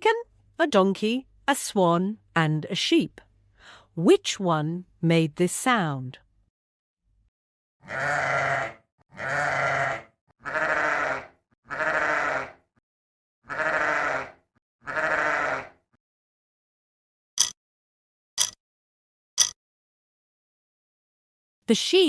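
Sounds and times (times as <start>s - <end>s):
sheep bleating: 7.8s - 12.6s, 13.5s - 15.8s.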